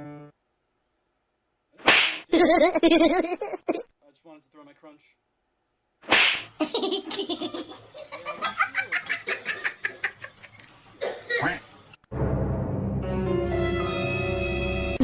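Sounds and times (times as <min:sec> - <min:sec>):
music: 0:00.0 - 0:00.4, 0:12.1 - 0:15.0
person laughing hard: 0:02.3 - 0:03.9.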